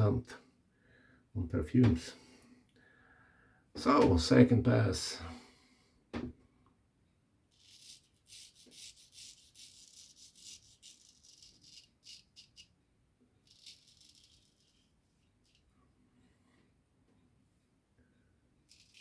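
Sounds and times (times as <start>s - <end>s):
razor scraping stubble: 7.5s - 12.7s.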